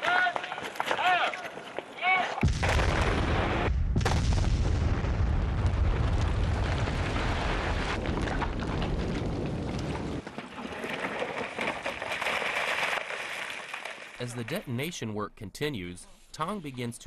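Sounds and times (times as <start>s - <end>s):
rock blasting rumble: 2.4s - 12.0s.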